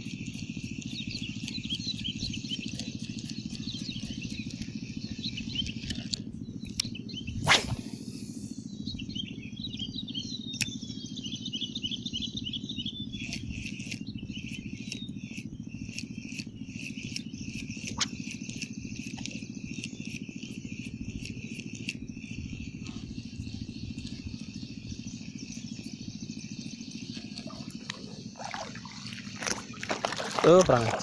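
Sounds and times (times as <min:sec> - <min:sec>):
insects chirping and clicking: 0:00.0 - 0:31.0
steady low hum: 0:00.0 - 0:31.0
bird warbling: 0:17.0 - 0:19.8, 0:21.5 - 0:31.0.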